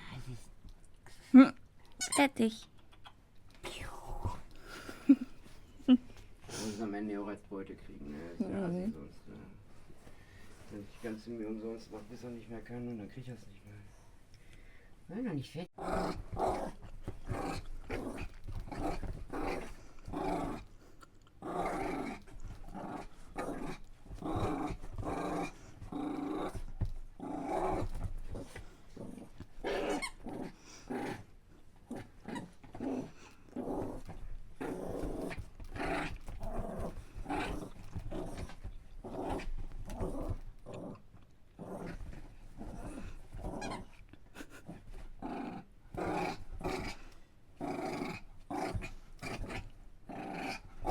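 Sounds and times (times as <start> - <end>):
dog growling playfully: 15.8 - 50.9.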